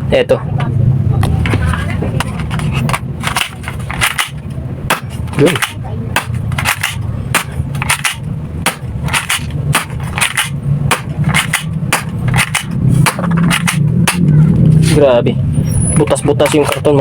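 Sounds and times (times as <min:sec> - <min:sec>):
steady low hum: 0:00.0 - 0:17.0
toy pellet gun firing: 0:03.4 - 0:14.3
pellets hitting cardboard box: 0:08.7 - 0:14.2.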